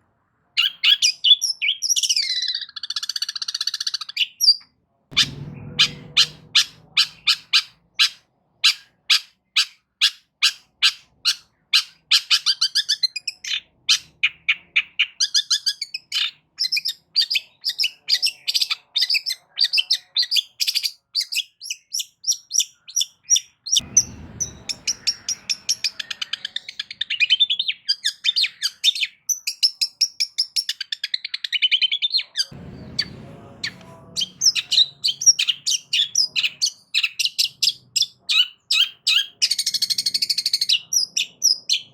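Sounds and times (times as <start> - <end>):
bird singing rapid chattering song: 0.6 - 41.9
low rumble: 5.1 - 7.5, 32.6 - 35.2.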